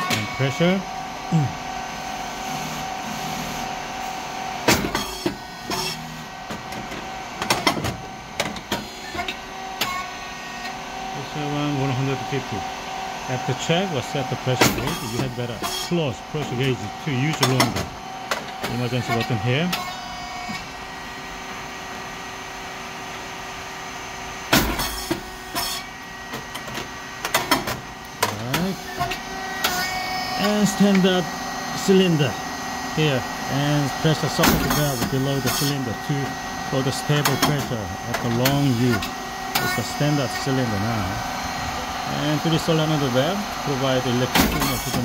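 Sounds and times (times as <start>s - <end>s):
machine humming: 0.0s - 45.0s
sharp mechanical clicks and knocks: 4.6s - 10.0s, 17.3s - 19.9s, 24.5s - 29.8s, 34.3s - 35.8s, 37.2s - 39.8s, 44.3s - 45.0s.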